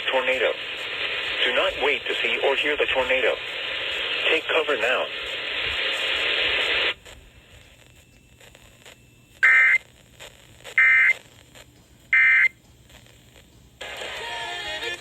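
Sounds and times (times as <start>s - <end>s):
buzzing data tones: 7.1s - 13.4s.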